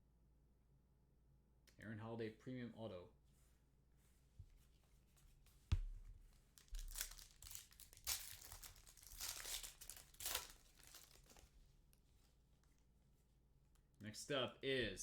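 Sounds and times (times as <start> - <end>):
foil wrapper tearing and crinkling: 6.5 - 11.5.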